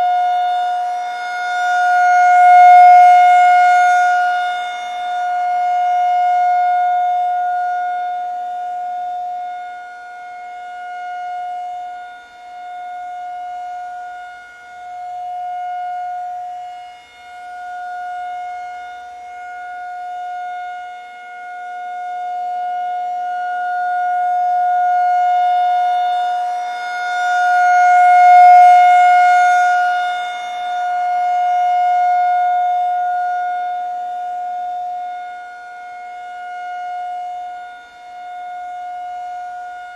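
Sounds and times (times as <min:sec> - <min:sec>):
tornado warning siren steady tone: 0:00.0 - 0:39.9.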